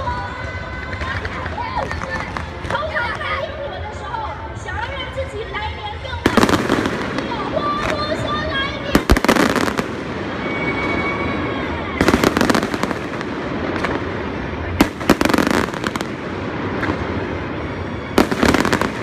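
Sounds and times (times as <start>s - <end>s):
fireworks crackling bangs: 6.2s - 19.0s.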